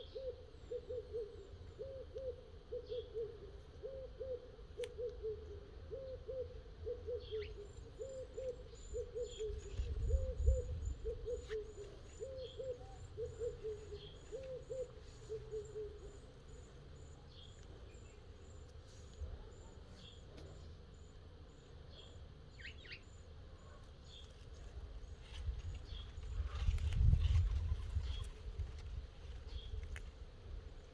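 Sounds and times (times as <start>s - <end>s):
bird hooting: 0.0s - 17.5s.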